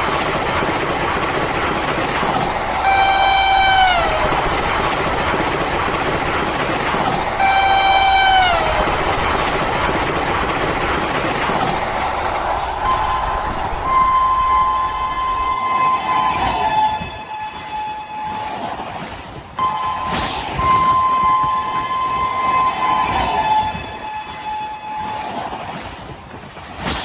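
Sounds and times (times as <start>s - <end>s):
running train noise: 0.0s - 27.0s
locomotive horn blasts: 2.5s - 6.3s, 7.1s - 10.1s, 12.0s - 18.8s, 19.6s - 25.7s
high steady horn tone: 2.5s - 10.8s, 11.7s - 18.8s, 19.6s - 25.6s.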